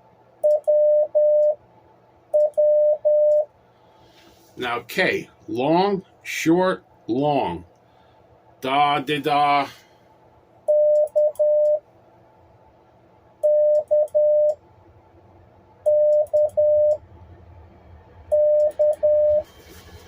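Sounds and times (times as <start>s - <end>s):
morse code tone: 0.4s - 1.6s, 2.4s - 3.5s, 10.7s - 11.8s, 13.4s - 14.6s, 15.9s - 17.0s, 18.3s - 19.5s.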